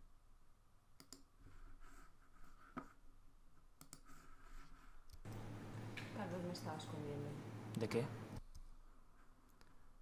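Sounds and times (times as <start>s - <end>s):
computer mouse clicks: 1.0s - 1.3s, 3.8s - 4.1s.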